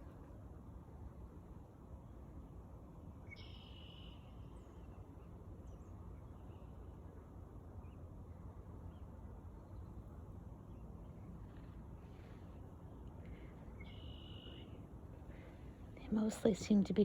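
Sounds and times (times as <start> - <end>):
low background hiss: 0.0 - 17.0
songbirds calling: 3.2 - 6.9, 7.8 - 17.0.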